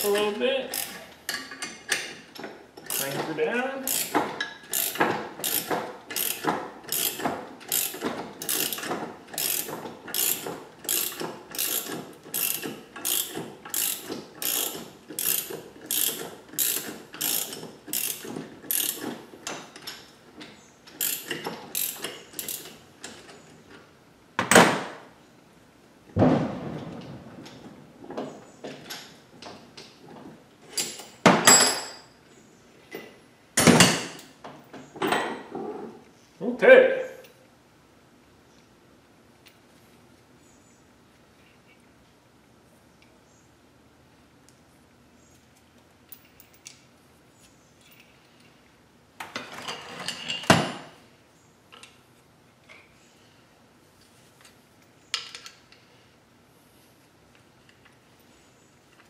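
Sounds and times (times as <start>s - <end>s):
ratchet wrench clicking: 0.0s - 1.6s, 2.8s - 3.2s, 3.9s - 19.2s, 20.9s - 22.8s
loud sharp bang: 26.2s - 27.4s.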